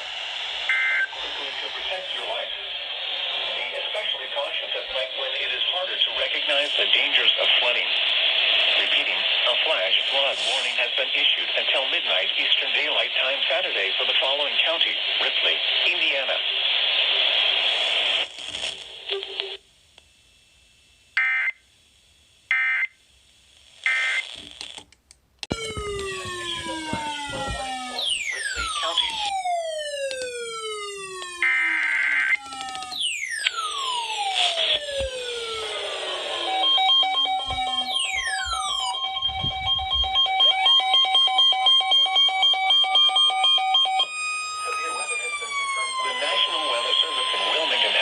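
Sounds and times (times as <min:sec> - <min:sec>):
rising electronic tone: 0:25.5 - 0:40.4
siren-like electronic wail: 0:25.5 - 0:48.0.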